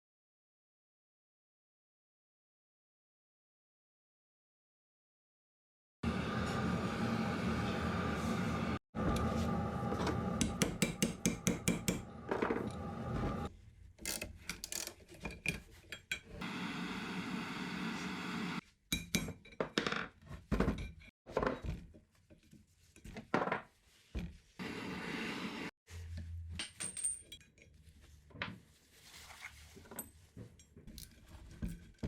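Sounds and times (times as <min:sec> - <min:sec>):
metal parts clinking on workbench: 0:26.6 - 0:27.7.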